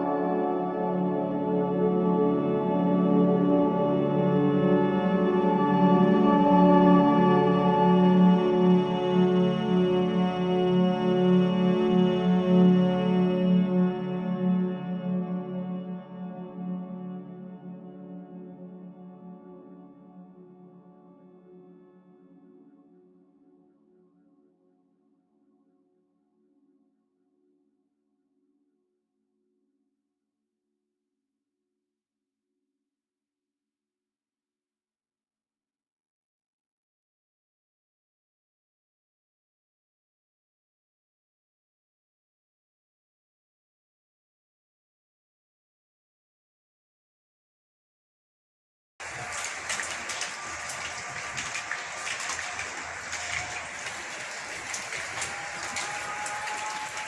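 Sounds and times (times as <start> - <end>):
rain drops ticking on hard surfaces: 49.0 - 57.0.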